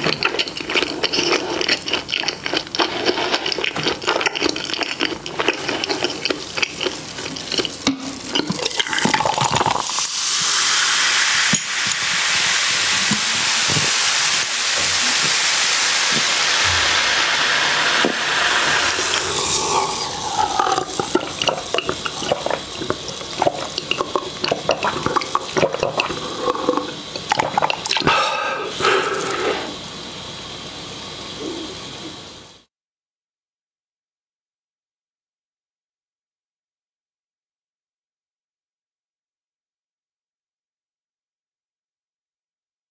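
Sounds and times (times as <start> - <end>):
steady hiss: 10.0 - 27.3, 28.2 - 32.7.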